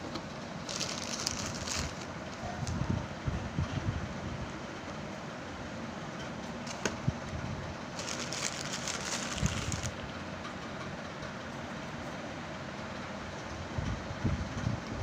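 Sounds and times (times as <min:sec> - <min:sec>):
packaging crinkling: 0:00.6 - 0:02.8, 0:08.0 - 0:10.0
packaging clicks: 0:00.7 - 0:02.8, 0:08.0 - 0:10.0.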